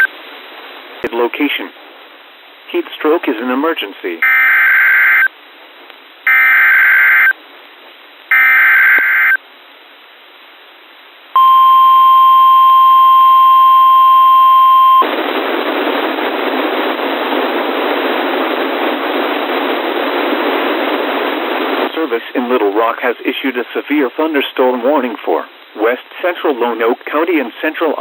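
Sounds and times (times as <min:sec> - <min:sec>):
static hiss: 0:00.0 - 0:28.0
digital header data bursts: 0:04.2 - 0:05.3, 0:06.3 - 0:07.3, 0:08.3 - 0:09.4
single-pitch warning alarm tone: 0:04.2 - 0:05.3, 0:06.3 - 0:07.3, 0:08.3 - 0:09.4, 0:11.4 - 0:15.0.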